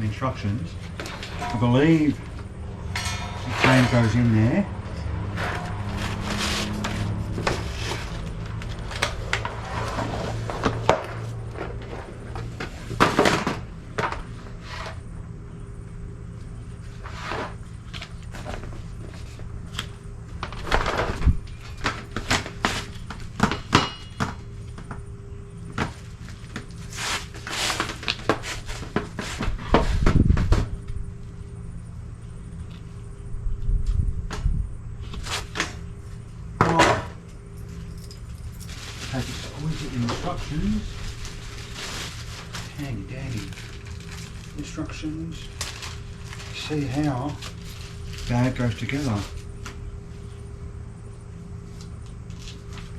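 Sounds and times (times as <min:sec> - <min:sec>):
rustling: 0:37.6 - 0:50.4.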